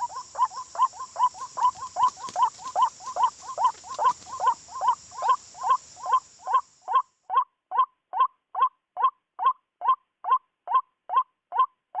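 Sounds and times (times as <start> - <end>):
high insect-like hiss: 0.0 - 6.9.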